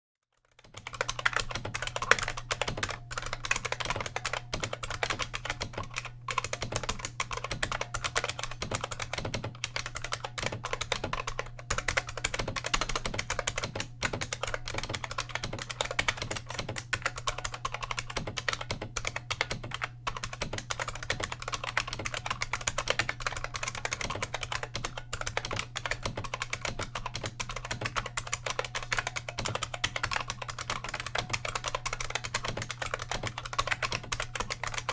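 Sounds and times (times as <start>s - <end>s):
fast clicky keyboard typing: 0.4s - 34.9s.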